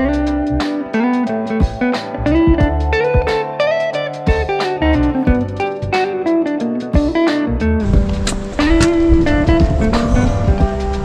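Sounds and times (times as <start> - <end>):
bass line: 0.0 - 0.7, 1.7 - 3.4, 4.3 - 6.0, 7.0 - 11.0
plucked guitar melody: 0.0 - 11.0
steady beat: 0.0 - 11.0.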